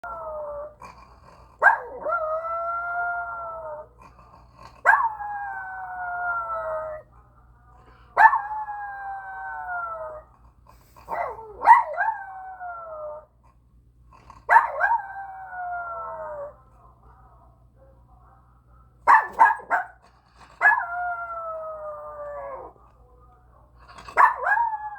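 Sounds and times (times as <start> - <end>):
puppy howling: 1.6 - 3.9, 4.8 - 7.1, 8.2 - 10.3, 11.1 - 13.3, 14.5 - 16.6, 20.6 - 22.8, 23.9 - 24.9.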